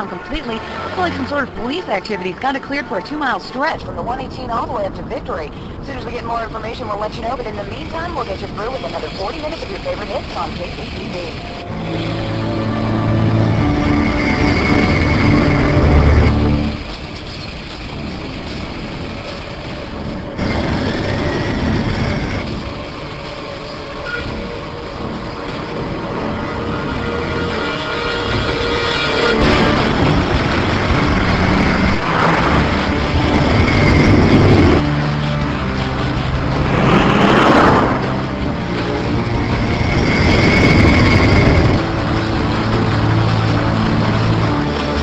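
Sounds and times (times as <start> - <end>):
heavy engine rumble: 0.0 - 45.0
high steady whine: 0.0 - 45.0
vehicle whooshing past: 36.3 - 39.2.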